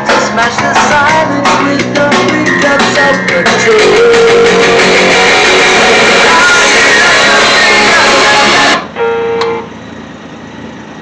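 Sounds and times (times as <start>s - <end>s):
rock song with electric guitar: 0.0s - 8.8s.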